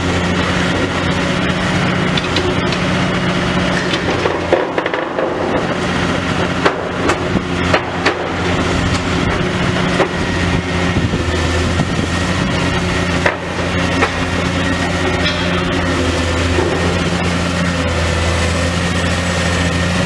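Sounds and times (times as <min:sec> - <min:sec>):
excavator diesel engine running: 0:00.0 - 0:20.0
debris breaking with knocks: 0:00.2 - 0:10.7, 0:12.8 - 0:18.2.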